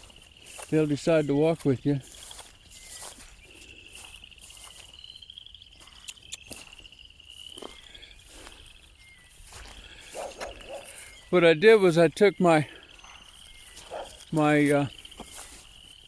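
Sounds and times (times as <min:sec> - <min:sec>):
high-pitched insect or frog trill: 0:00.0 - 0:11.3, 0:12.7 - 0:16.0
footsteps clicking and rustling: 0:00.0 - 0:16.0.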